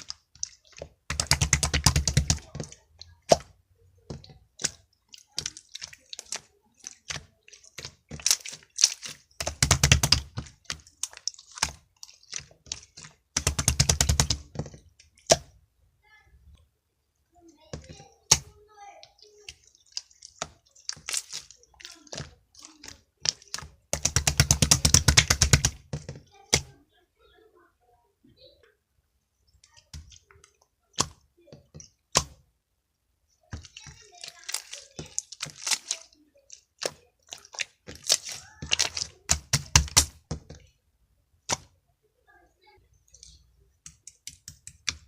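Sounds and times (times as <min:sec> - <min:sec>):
sharp clicks and taps: 0:00.0 - 0:03.5, 0:04.1 - 0:15.6, 0:17.7 - 0:26.8, 0:43.1 - 0:45.0
slime crackling and popping: 0:00.0 - 0:03.5, 0:04.1 - 0:15.5, 0:19.2 - 0:25.9, 0:33.6 - 0:40.3.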